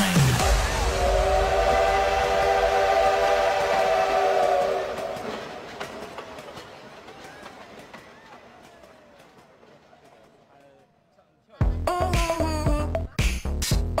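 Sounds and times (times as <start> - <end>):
steam train whistle chord: 0.3 - 5.6.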